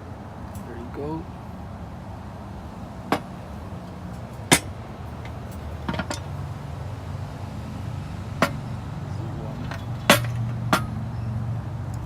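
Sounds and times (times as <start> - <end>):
sharp knocks and clinks: 4.3 - 6.3, 9.5 - 11.0.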